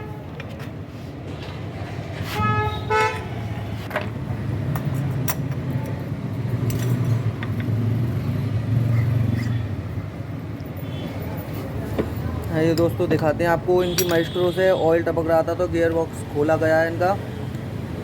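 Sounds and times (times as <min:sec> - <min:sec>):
traffic engine rumble: 0:00.0 - 0:18.0
vehicle horn toots: 0:02.4 - 0:03.3, 0:13.8 - 0:14.6.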